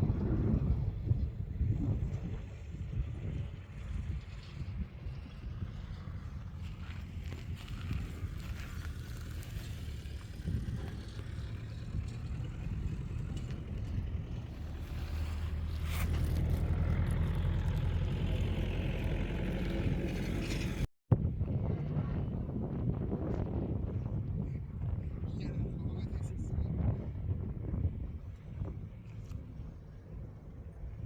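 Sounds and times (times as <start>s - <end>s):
boat motor humming: 0.0s - 20.9s.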